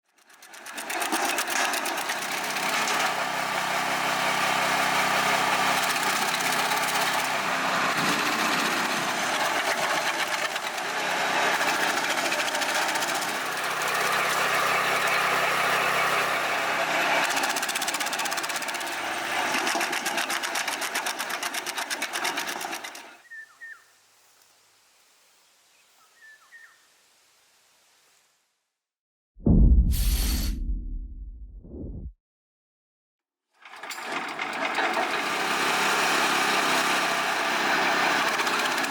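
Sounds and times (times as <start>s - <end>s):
wood chipper running: 0.1s - 23.0s, 33.7s - 38.9s.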